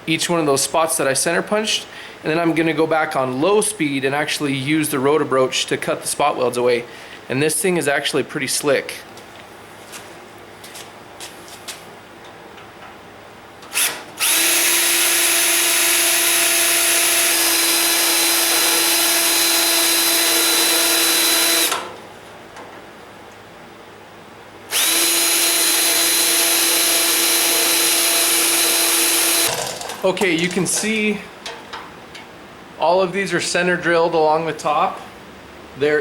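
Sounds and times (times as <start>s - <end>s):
electric drill drilling into steel: 13.7s - 21.9s, 24.7s - 30.0s.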